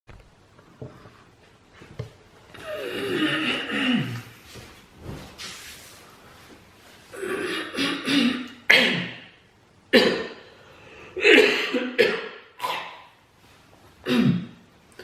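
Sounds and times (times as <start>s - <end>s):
man coughing: 2.8s - 4.3s, 7.2s - 9.2s, 9.9s - 10.4s, 11.2s - 13.0s, 14.0s - 14.6s.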